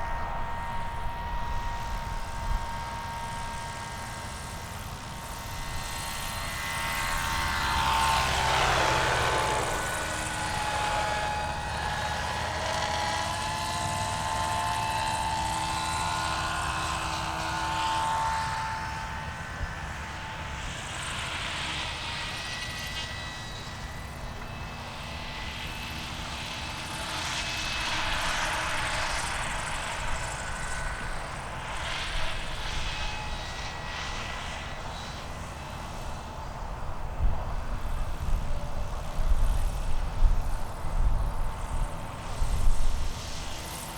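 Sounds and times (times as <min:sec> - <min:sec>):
model aircraft motor whine: 0:00.0 - 0:43.9.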